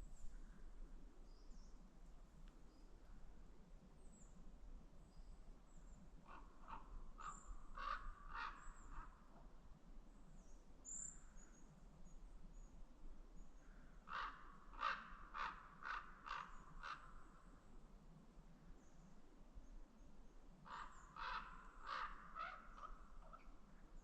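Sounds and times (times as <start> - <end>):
raven croaking: 20.7 - 23.0.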